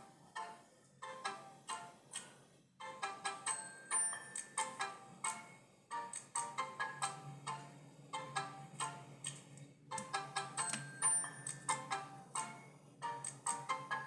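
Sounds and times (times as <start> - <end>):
phone ringtone melody: 2.8 - 5.0, 6.4 - 7.6, 10.0 - 12.5.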